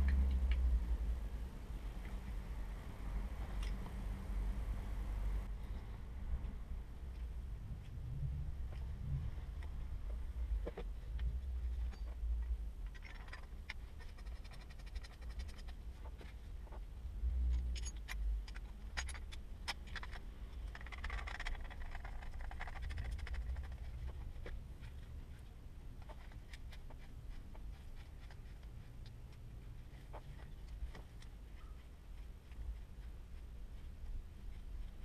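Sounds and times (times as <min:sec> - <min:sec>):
low rumble: 0:00.0 - 0:26.2.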